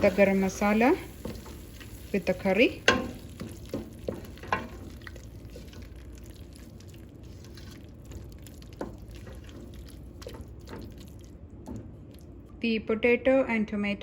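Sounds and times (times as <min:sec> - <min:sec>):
spoon stirring thick curry: 0:02.7 - 0:12.4.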